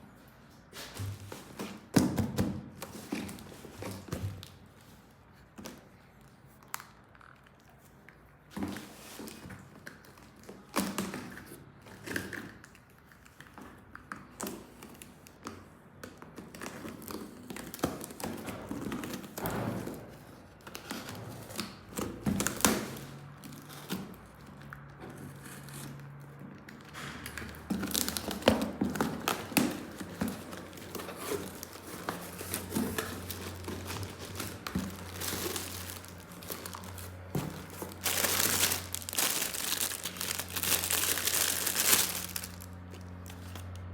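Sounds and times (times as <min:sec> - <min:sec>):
loud packaging rustle: 0:26.8 - 0:43.9
plastic packaging crinkling and tearing: 0:26.8 - 0:43.9.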